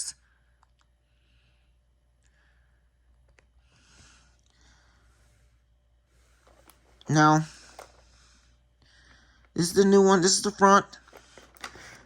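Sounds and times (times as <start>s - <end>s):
soft breathy puffs: 0.2s - 9.6s.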